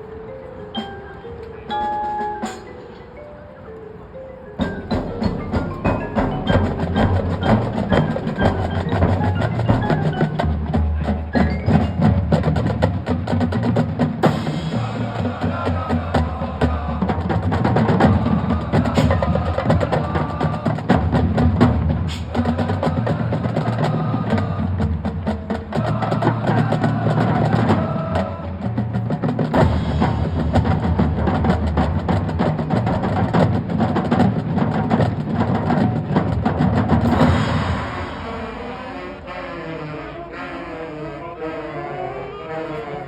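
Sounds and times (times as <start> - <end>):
marching band playing: 0.0 - 43.0
sharp percussion strikes: 0.7 - 3.7, 4.6 - 23.2, 29.5 - 39.3.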